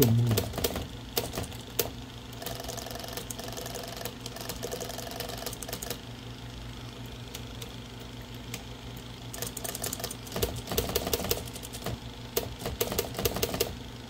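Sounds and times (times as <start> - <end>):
typewriter mechanical clacking: 0.0 - 6.0, 9.3 - 13.8
typewriter motor hum: 0.0 - 13.9.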